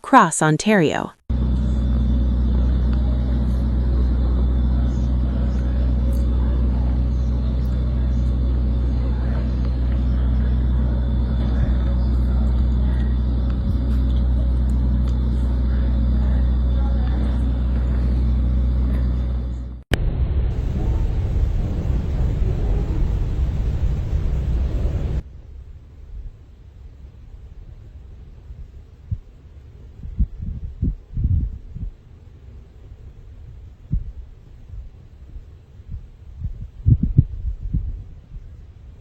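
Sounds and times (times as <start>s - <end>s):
vehicle engine running: 1.3s - 25.3s.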